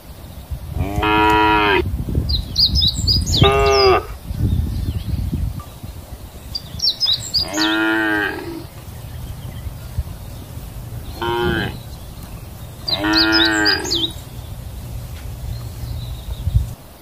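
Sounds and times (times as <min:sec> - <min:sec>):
cows mooing: 0:00.8 - 0:01.8, 0:03.3 - 0:04.2, 0:07.3 - 0:16.2.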